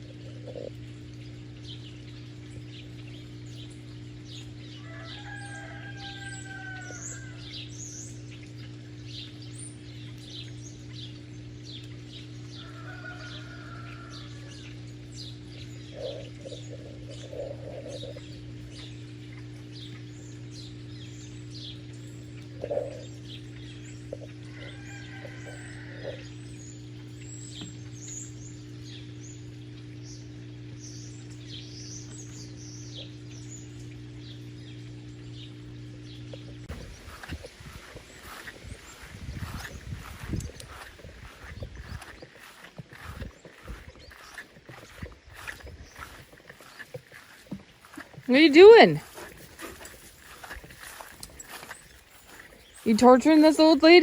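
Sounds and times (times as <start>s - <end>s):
small birds chirping: 0.0s - 54.0s
steady low hum: 0.0s - 54.0s
chickens clucking: 15.9s - 18.3s, 22.4s - 26.5s, 36.7s - 54.0s.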